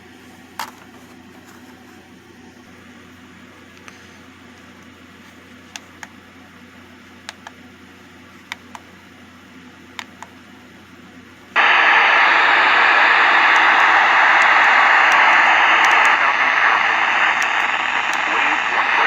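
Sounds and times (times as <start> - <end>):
radio static hiss: 11.6 - 19.0.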